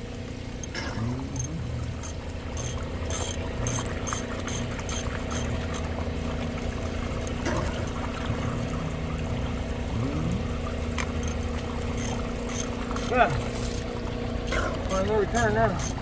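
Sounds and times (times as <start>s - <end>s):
pump humming: 0.0s - 16.0s
water pouring and splashing: 0.0s - 16.0s
sharp clicks: 0.6s - 5.9s.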